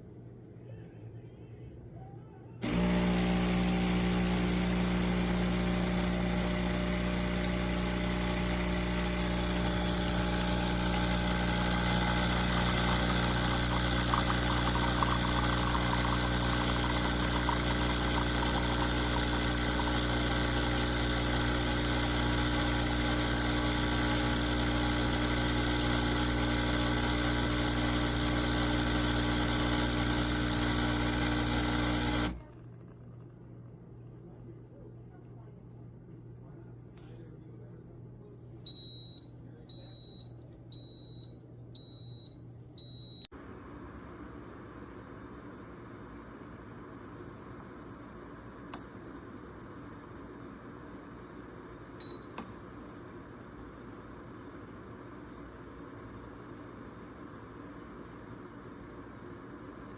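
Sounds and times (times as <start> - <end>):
espresso machine pump hum: 2.6 - 37.2.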